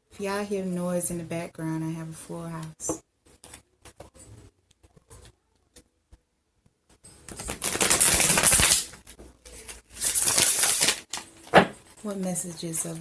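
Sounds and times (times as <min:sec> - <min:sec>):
cards riffling together: 0:07.3 - 0:09.0.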